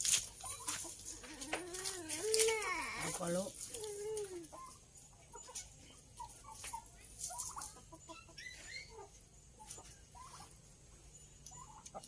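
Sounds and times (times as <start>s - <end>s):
chickens clucking softly: 3.8s - 12.0s.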